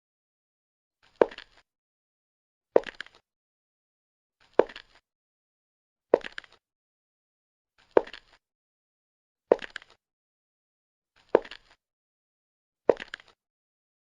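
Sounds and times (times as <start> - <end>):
high-heeled footsteps: 1.2 - 1.4, 4.6 - 4.8, 8.0 - 8.3, 9.5 - 9.8, 11.3 - 11.7, 12.9 - 13.2.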